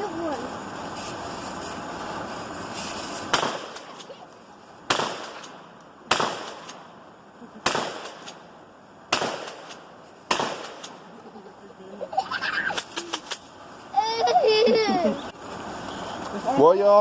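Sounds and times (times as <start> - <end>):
shotgun shots with echo: 3.3 - 3.9, 4.9 - 6.8, 7.6 - 8.4, 9.1 - 11.0.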